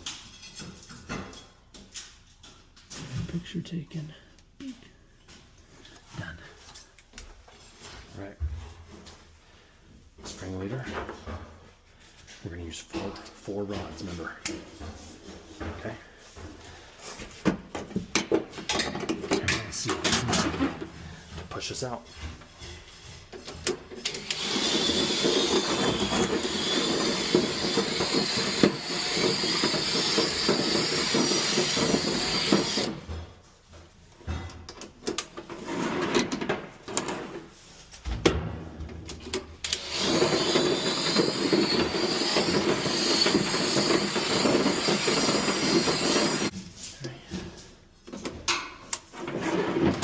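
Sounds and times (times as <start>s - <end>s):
drill spinning brush in duct: 24.2s - 33.1s, 39.7s - 46.5s.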